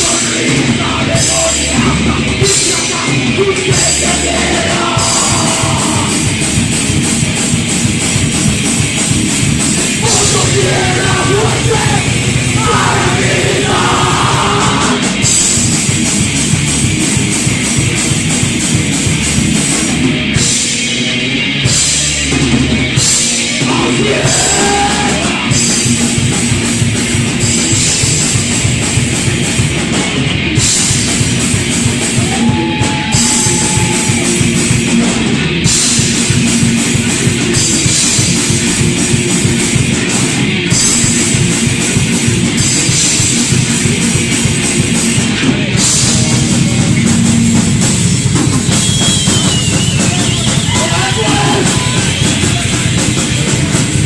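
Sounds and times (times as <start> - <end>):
thrash metal band playing: 0.0 - 54.0.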